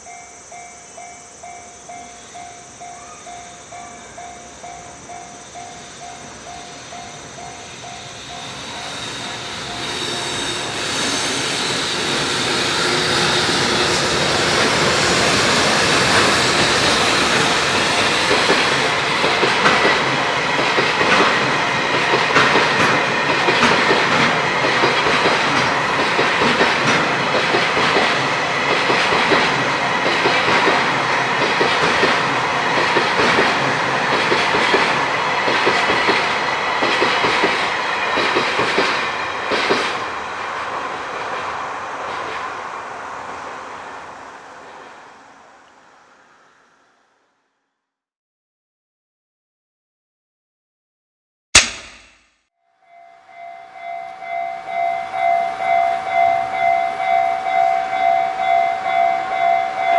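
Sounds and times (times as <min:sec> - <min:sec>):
train wheels clattering over rail joints: 0:08.2 - 0:40.1.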